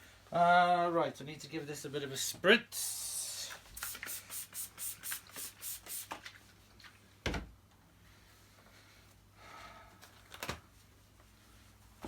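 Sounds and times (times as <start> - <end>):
spray bottle squirts: 3.8 - 6.2.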